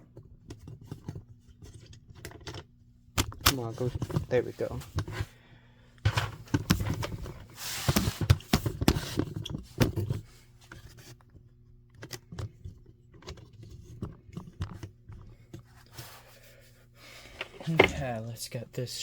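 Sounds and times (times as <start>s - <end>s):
faint steady hum: 0.0s - 19.0s
clicks scrapes and rustling: 17.2s - 18.0s.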